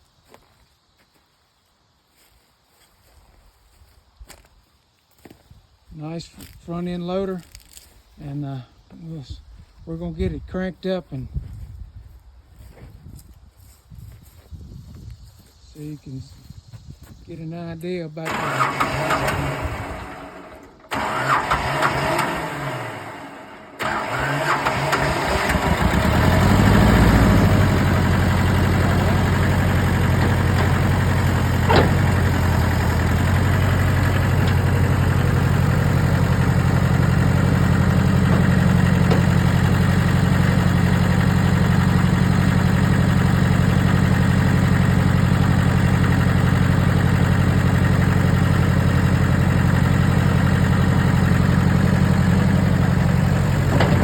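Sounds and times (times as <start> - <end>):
tractor diesel engine starting: 17.4 - 54.0
starter motor cranking: 18.2 - 44.0, 44.6 - 54.0.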